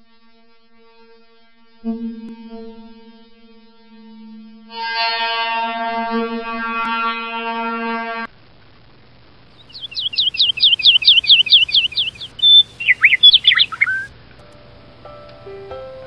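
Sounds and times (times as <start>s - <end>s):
held horn-like note: 1.6s - 8.3s
bird chirping and whistling: 9.6s - 14.1s.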